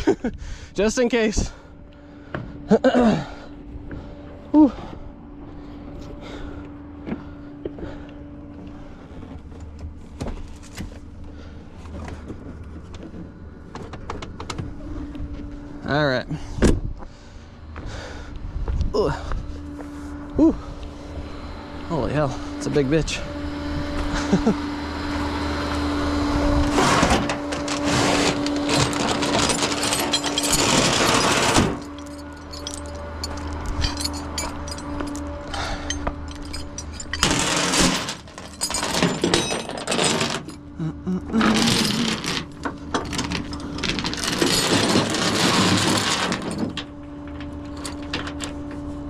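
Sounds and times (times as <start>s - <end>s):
steady hum: 0.0s - 10.3s, 14.4s - 49.0s
chains rattling and clanking: 26.9s - 40.6s, 41.4s - 46.9s, 47.8s - 48.5s.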